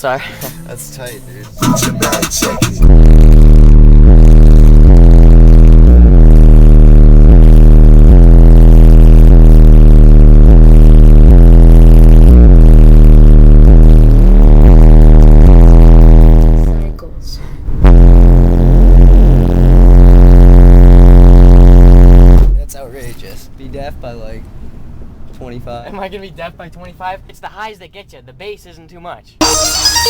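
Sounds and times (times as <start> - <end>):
short beat hits: 0.4 - 3.1
deep sustained bass note: 2.8 - 16.9, 17.8 - 22.6.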